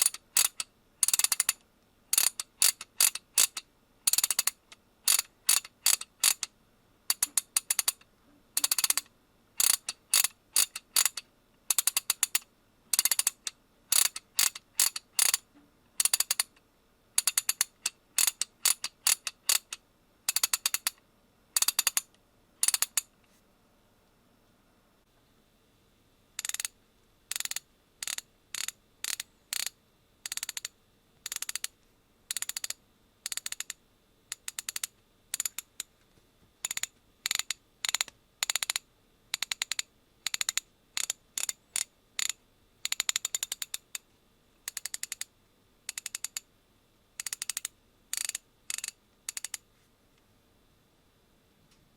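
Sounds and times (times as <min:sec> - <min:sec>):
ratchet clicking: 0:00.0 - 0:06.5, 0:07.1 - 0:08.0, 0:08.6 - 0:15.4, 0:16.0 - 0:16.5, 0:17.2 - 0:21.0, 0:21.6 - 0:23.1, 0:26.4 - 0:31.7, 0:32.3 - 0:35.7, 0:36.6 - 0:38.8, 0:39.4 - 0:44.0, 0:44.7 - 0:45.3, 0:45.9 - 0:46.4, 0:47.2 - 0:49.6.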